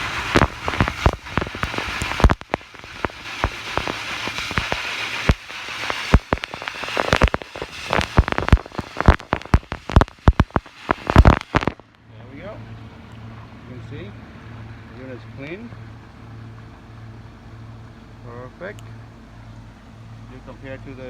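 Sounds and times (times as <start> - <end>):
water splashing and dripping: 0.0 - 11.5
low water hiss: 0.0 - 21.0.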